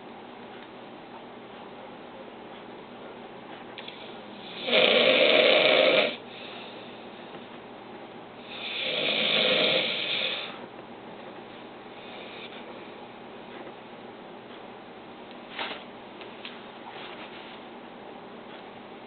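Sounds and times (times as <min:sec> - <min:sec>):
man snoring: 0:04.4 - 0:06.2, 0:08.4 - 0:10.6.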